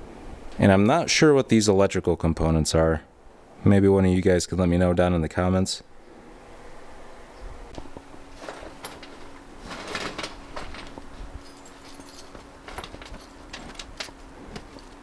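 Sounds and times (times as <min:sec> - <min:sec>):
scrap metal clinking: 0:08.3 - 0:15.0.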